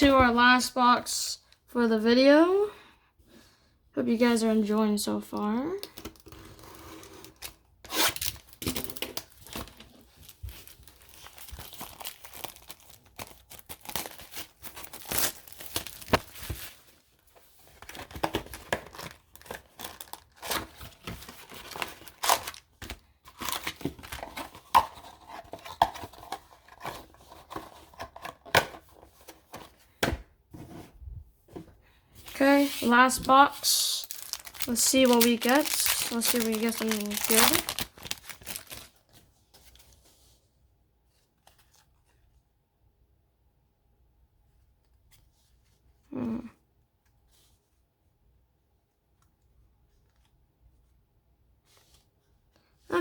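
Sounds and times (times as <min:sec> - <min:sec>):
plastic wrapping tearing and crinkling: 0:07.3 - 0:16.8, 0:17.8 - 0:24.4, 0:32.3 - 0:39.1.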